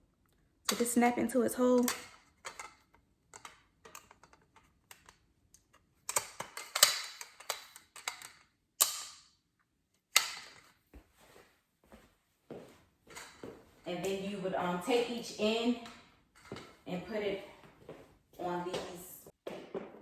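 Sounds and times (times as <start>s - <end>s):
metal poles clicking and rattling: 1.7s - 9.2s, 13.1s - 17.2s.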